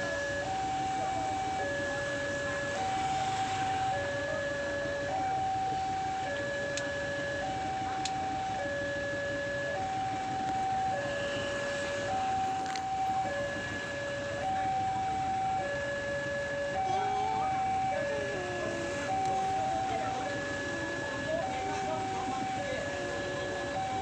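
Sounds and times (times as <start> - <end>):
two-tone crossing alarm siren: 0.0 - 24.0.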